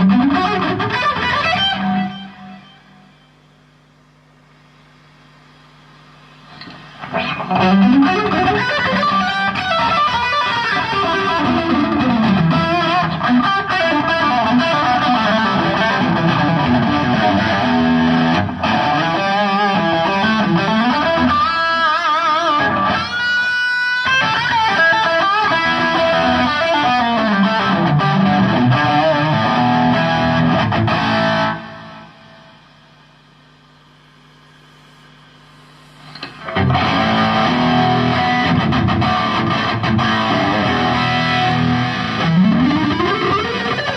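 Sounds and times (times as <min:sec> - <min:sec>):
distorted electric guitar: 0:00.0 - 0:05.8, 0:06.4 - 0:43.9
rock band playing: 0:07.2 - 0:18.5, 0:36.5 - 0:43.9.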